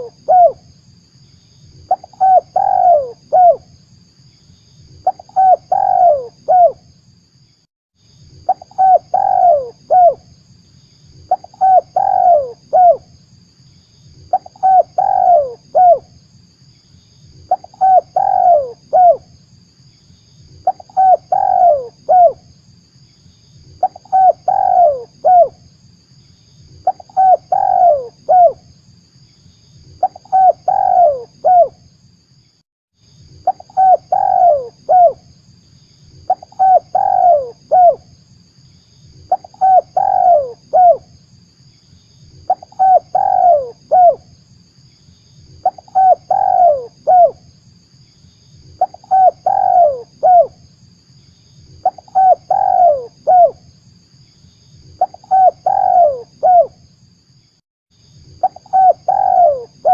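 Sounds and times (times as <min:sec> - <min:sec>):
dove cooing: 0:00.0 - 0:00.6, 0:01.9 - 0:03.6, 0:05.0 - 0:06.8, 0:08.5 - 0:10.2, 0:11.3 - 0:13.0, 0:14.3 - 0:16.0, 0:17.5 - 0:19.3, 0:20.6 - 0:22.4, 0:23.8 - 0:25.6, 0:26.8 - 0:28.6, 0:30.0 - 0:31.8, 0:33.5 - 0:35.2, 0:36.3 - 0:38.0, 0:39.3 - 0:41.0, 0:42.5 - 0:44.2, 0:45.6 - 0:47.4, 0:48.8 - 0:50.5, 0:51.8 - 0:53.6, 0:55.0 - 0:56.7, 0:58.4 - 0:59.9.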